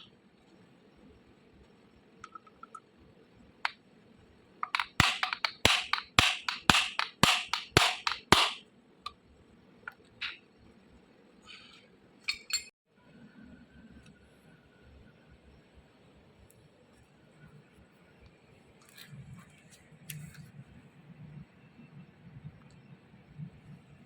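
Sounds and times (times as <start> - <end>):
tapping on metal motor parts: 4.6 - 9.2.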